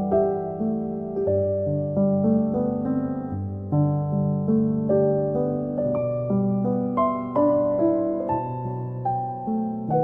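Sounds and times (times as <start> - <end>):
piano playing slow chords: 0.0 - 10.0.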